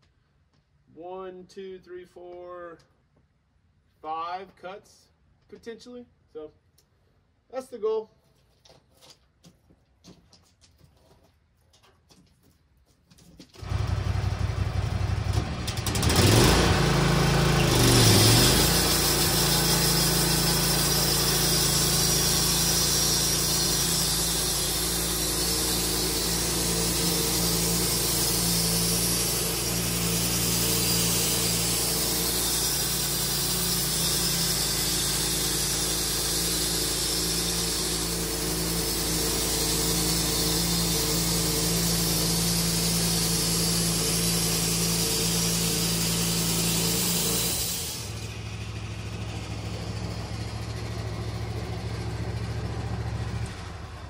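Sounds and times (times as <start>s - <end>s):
sawmill engine revving: 13.6s - 54.0s.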